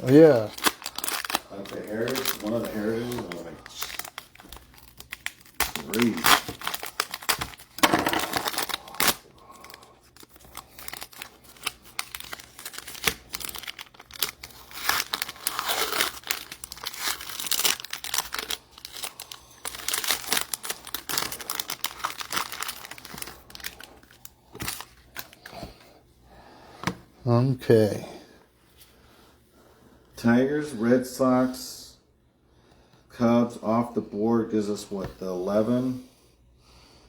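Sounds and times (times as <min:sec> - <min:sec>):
card pack wrappers crinkling: 0:00.0 - 0:25.8.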